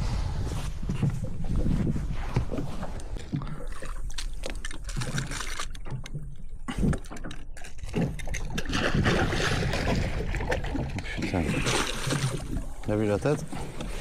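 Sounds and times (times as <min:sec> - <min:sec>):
steady low rumble: 0:00.0 - 0:03.8
waves slapping against hull: 0:00.0 - 0:14.0.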